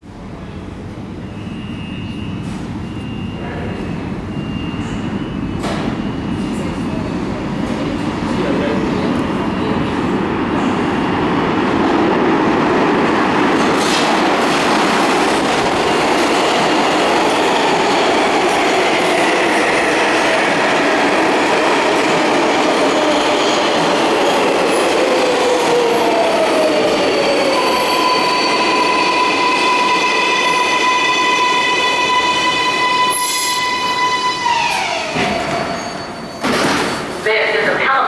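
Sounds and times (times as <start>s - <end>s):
subway train pulling in: 0.0s - 38.0s.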